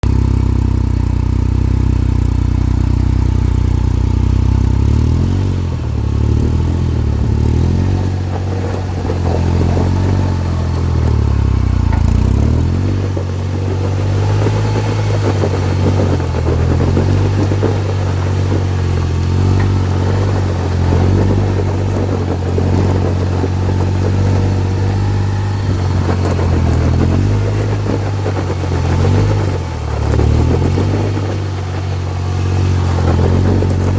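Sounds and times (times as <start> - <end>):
vehicle engine running: 0.0 - 33.9
clattering clunking noise: 8.3 - 31.3.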